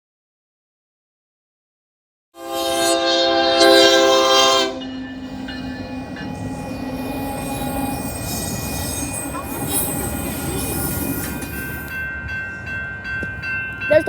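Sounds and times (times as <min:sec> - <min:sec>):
locomotive air horn: 0:02.4 - 0:10.0
train rumbling on rails: 0:02.4 - 0:14.0.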